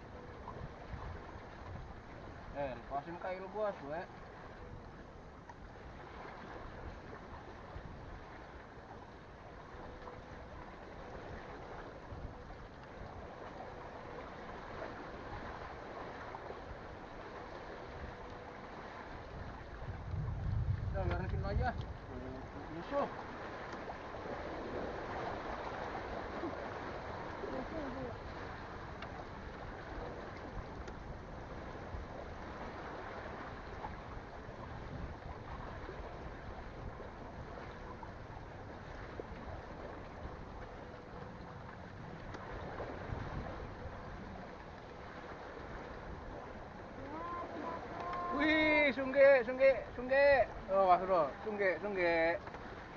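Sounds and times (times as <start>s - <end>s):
sea water lapping: 0.0s - 52.9s
wind: 0.0s - 52.9s
faint ticks: 5.4s - 5.6s, 12.7s - 13.6s, 28.9s - 29.2s, 30.3s - 31.0s, 41.6s - 42.5s, 47.9s - 48.4s.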